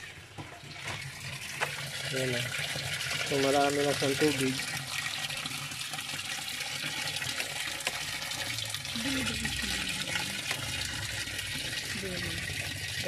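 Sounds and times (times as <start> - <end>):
water running into washing machine: 0.0 - 13.0.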